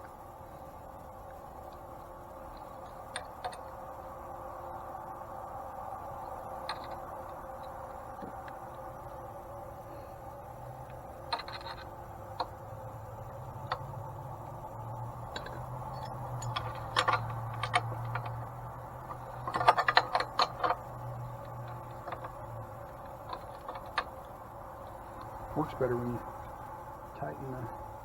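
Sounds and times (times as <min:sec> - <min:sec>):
steady low hum: 0:00.0 - 0:28.0
metallic clicks of screws and tools: 0:01.6 - 0:03.8, 0:06.2 - 0:08.8, 0:10.8 - 0:25.4.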